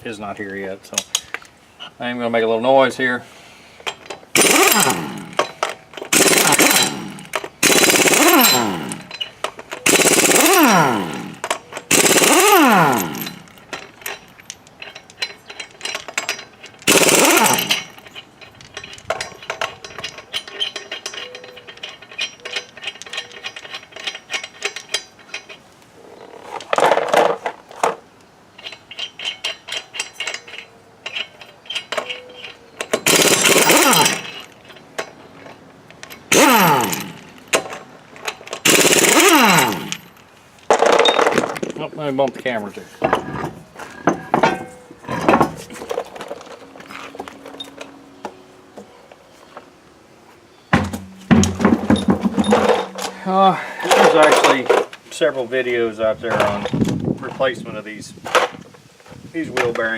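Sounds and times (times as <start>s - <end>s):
impact wrench hammering: 4.4s - 13.5s, 16.9s - 18.0s, 32.9s - 34.5s, 36.3s - 37.7s, 38.6s - 40.2s, 50.8s - 53.2s.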